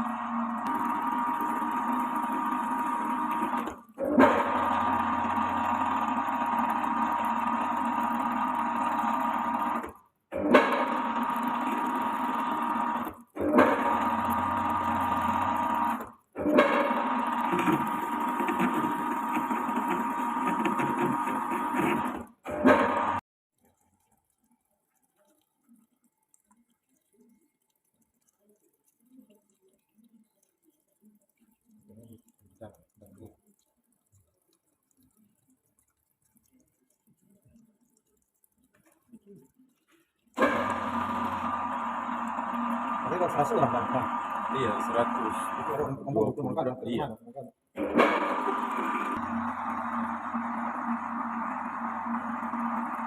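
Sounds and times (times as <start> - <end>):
metal lathe motor whine: 0.0 - 9.9, 10.6 - 23.2, 40.4 - 46.0, 47.8 - 53.0.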